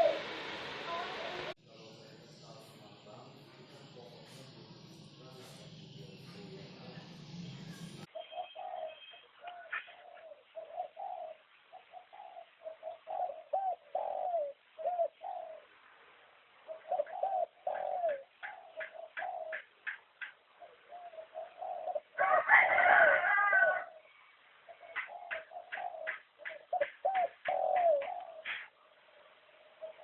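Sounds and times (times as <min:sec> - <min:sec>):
dove cooing: 0:00.0 - 0:01.5, 0:08.1 - 0:15.7, 0:16.6 - 0:24.1, 0:24.7 - 0:28.8, 0:29.6 - 0:30.0
loud noisy burst: 0:00.0 - 0:01.6
thin sharp ticks: 0:17.7 - 0:20.4, 0:25.0 - 0:28.7.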